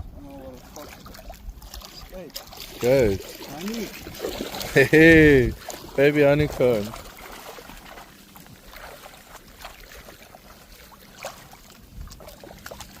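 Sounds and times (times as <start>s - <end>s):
water lapping and splashing: 0.0s - 13.0s.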